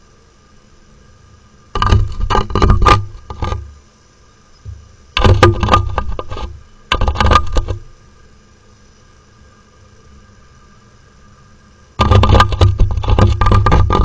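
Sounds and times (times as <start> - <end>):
bird pecking and scraping housing: 1.8 - 3.8, 5.2 - 7.9, 12.0 - 14.0.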